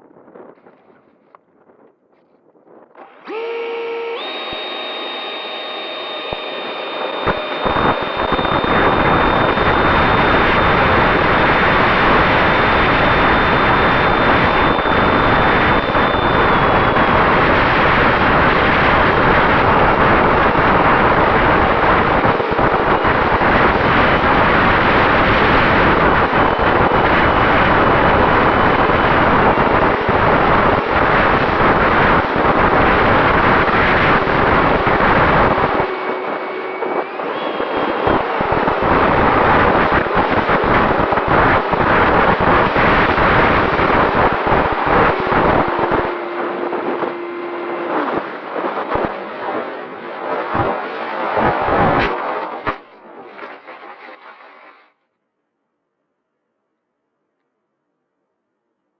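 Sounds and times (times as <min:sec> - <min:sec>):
ducted fan whine: 0:00.0 - 0:53.2
wind rush over airframe: 0:06.6 - 0:53.6.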